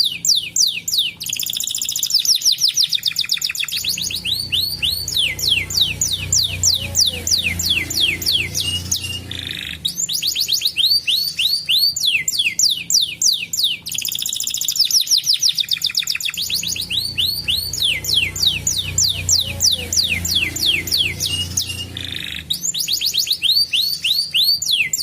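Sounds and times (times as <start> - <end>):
canary singing: 0.0 - 25.0.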